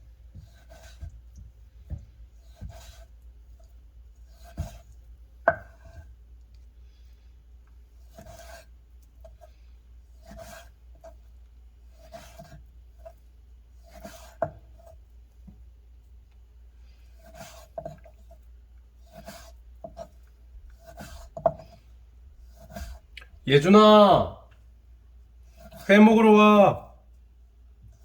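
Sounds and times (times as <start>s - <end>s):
knife slicing fish: 0.2s - 6.1s, 8.0s - 15.1s, 17.0s - 23.2s, 25.4s - 25.9s.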